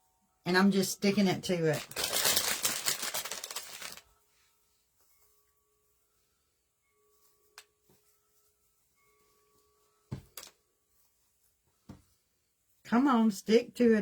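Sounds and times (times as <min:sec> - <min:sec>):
moss rustling: 0:01.7 - 0:04.0.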